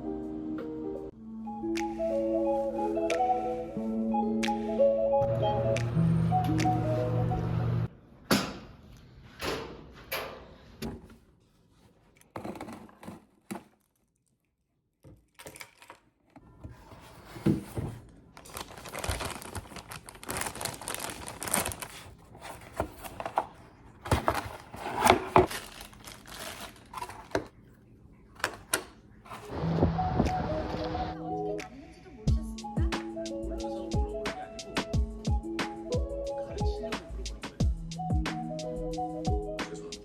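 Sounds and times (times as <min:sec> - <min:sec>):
crinkling and rustling: 0:11.0 - 0:14.4, 0:15.1 - 0:29.6.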